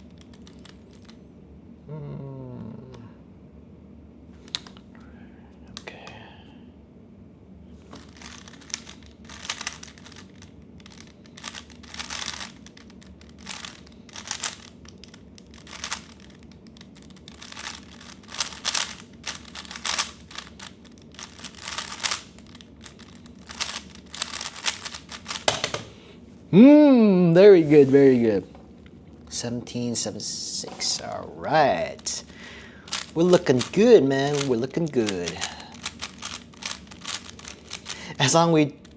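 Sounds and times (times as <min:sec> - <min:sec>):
plastic cube clicking and clacking: 0:08.1 - 0:25.9, 0:32.9 - 0:38.0.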